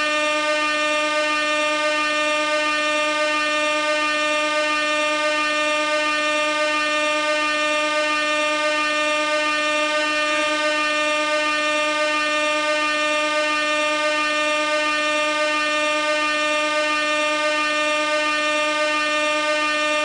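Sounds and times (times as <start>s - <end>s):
air horn blast: 0.0s - 20.0s.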